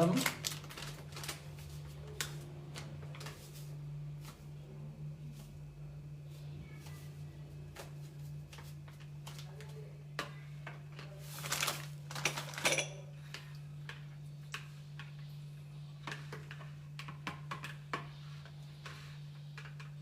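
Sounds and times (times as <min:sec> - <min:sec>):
steady low hum: 0:00.0 - 0:20.0
rustling and scraping: 0:00.5 - 0:04.6
utensils and dishes clinking: 0:12.2 - 0:13.1.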